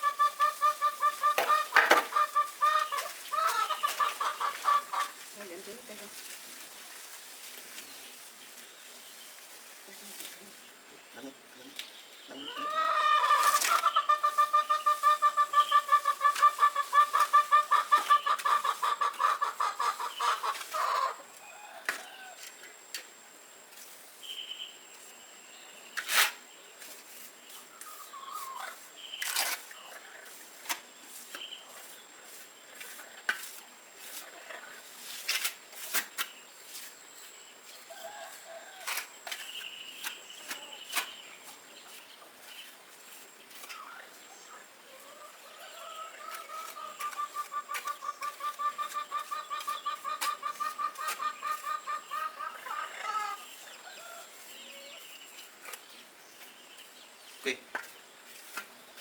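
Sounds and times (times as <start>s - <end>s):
chicken clucking: 0.0s - 6.0s, 12.3s - 22.3s, 27.7s - 30.4s, 43.6s - 55.8s.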